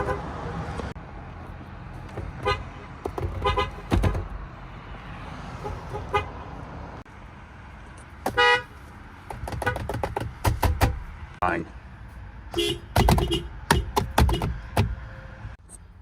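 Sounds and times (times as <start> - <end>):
car horn toots: 2.4 - 4.2, 8.3 - 8.7, 12.6 - 14.7.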